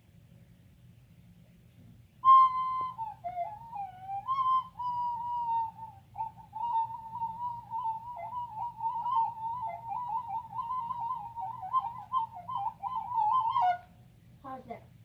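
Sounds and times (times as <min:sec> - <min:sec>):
recorder played shrilly: 0:02.3 - 0:13.9.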